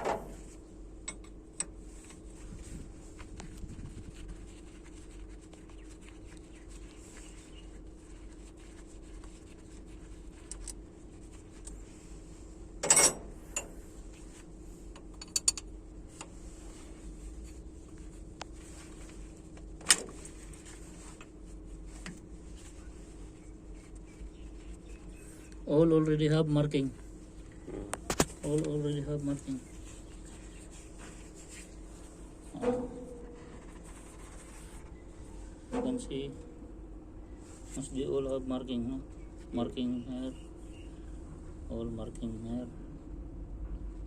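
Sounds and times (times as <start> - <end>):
steady low hum: 0.0 - 44.0.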